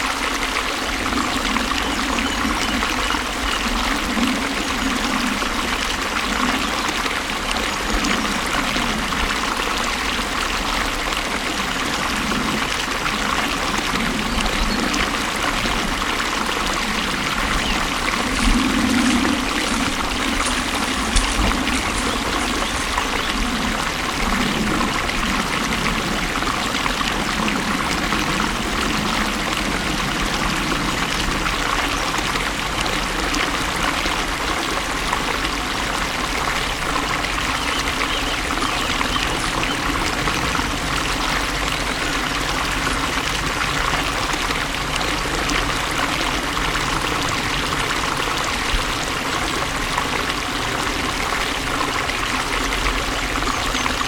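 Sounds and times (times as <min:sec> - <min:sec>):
stream rushing and trickling: 0:00.0 - 0:54.0.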